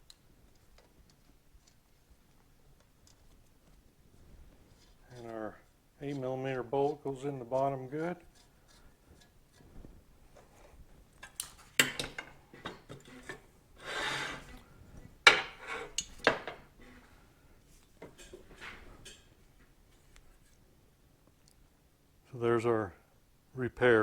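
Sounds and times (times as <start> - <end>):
short scrape: 13.8 - 14.6.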